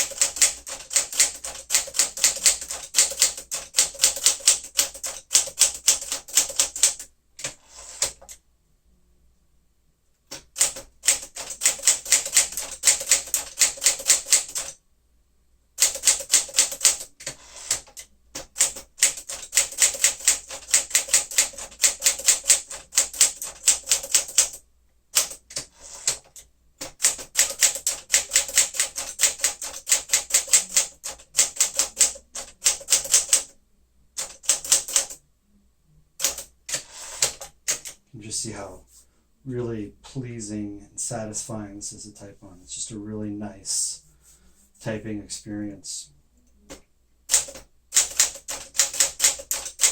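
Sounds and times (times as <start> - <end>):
typewriter key strikes: 47.3 - 49.9.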